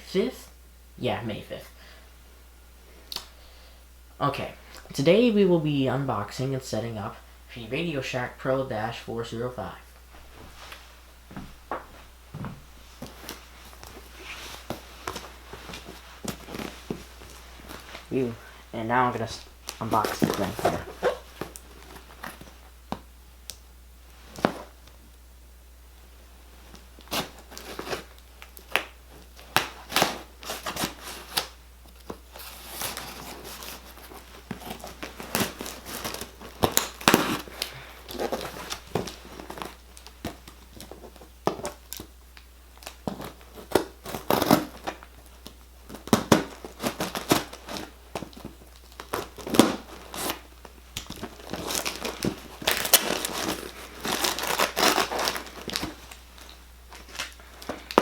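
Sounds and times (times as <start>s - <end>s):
packaging crinkling and tearing: 19.6s - 22.6s, 26.7s - 58.0s.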